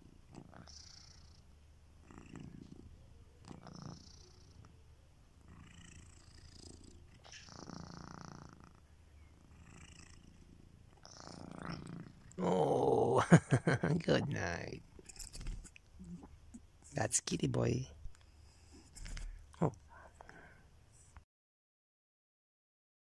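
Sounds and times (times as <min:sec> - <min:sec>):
cat snoring softly: 0:00.0 - 0:04.7, 0:05.4 - 0:12.4, 0:14.8 - 0:16.3, 0:18.4 - 0:19.4.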